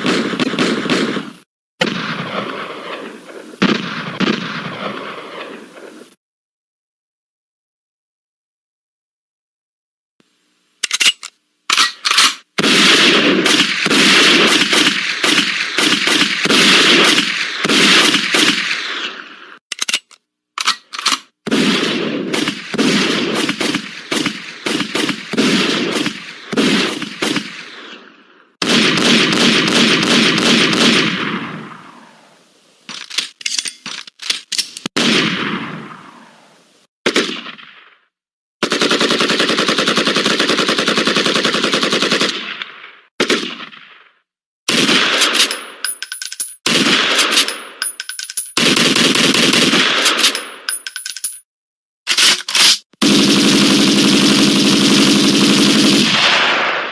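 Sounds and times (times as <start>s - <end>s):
single gunshots: 0.0s - 6.2s, 56.0s - 56.9s
machine-gun bursts: 10.9s - 18.7s, 38.6s - 42.4s, 44.7s - 47.6s, 48.5s - 51.2s, 52.1s - 56.5s.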